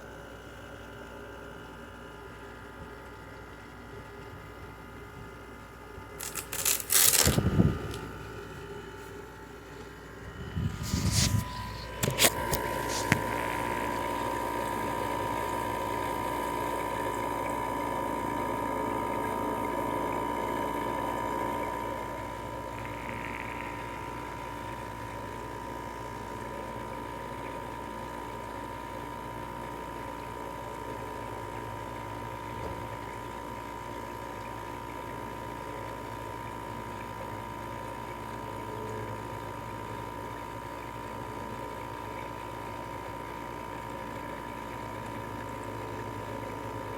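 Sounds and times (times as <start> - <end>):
air conditioner humming: 0.0 - 46.9.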